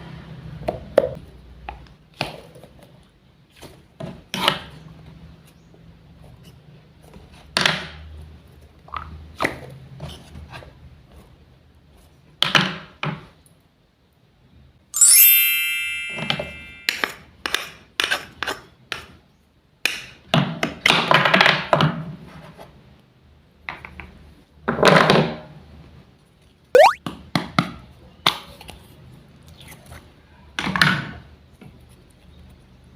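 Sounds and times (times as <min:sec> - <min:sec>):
bright ringing ding: 0:15.0 - 0:17.1.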